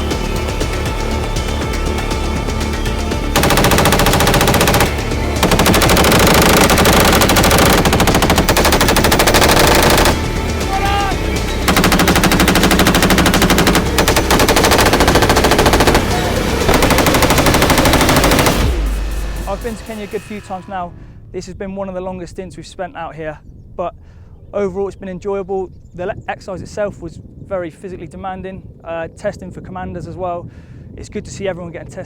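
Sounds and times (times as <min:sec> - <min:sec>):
music track: 0:00.0 - 0:21.8
automatic weapon fire: 0:03.4 - 0:10.3, 0:11.7 - 0:19.0.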